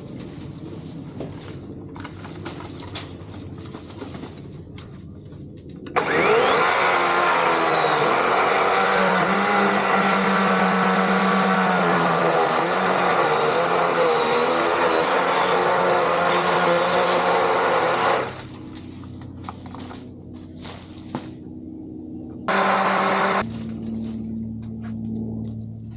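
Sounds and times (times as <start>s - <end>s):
cordless chainsaw cutting wood: 6.0s - 18.5s, 22.5s - 23.4s.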